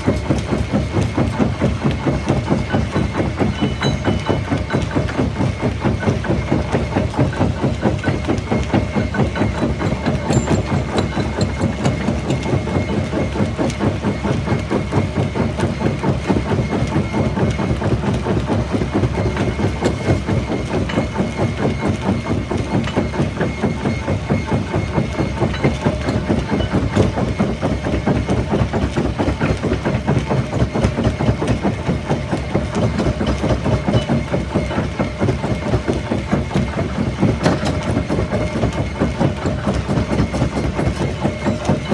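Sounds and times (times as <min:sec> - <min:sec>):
rock crusher rumbling: 0:08.9 - 0:12.6.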